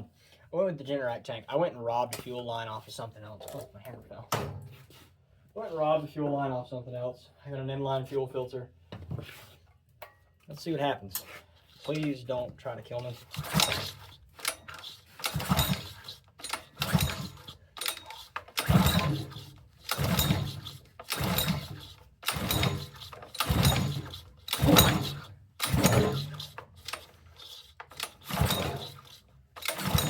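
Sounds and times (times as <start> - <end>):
small engine recoil starter pulls: 13.0 - 30.0.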